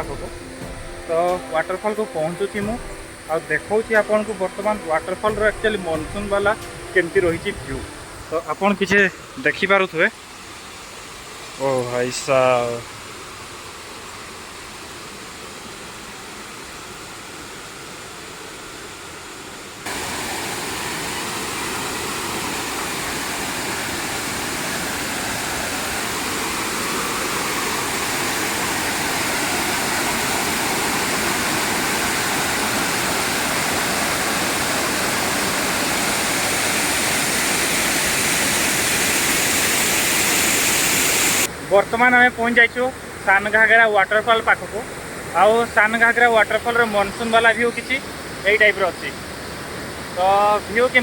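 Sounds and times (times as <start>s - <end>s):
waterfall rushing: 0.0s - 12.4s, 19.9s - 41.7s.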